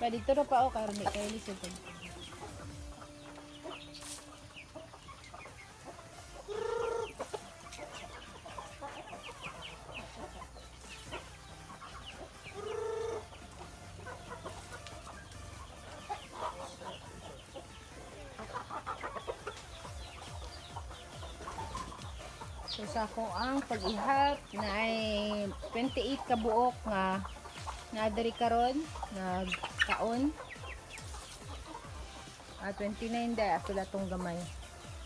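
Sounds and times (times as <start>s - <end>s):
chickens clucking: 0.0s - 35.0s
drawn-out chicken call: 1.0s - 35.0s.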